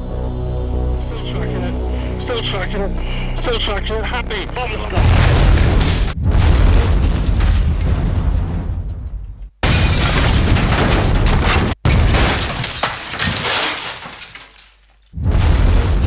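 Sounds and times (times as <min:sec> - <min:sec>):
bomb explosions: 0:04.5 - 0:12.1, 0:15.2 - 0:16.0.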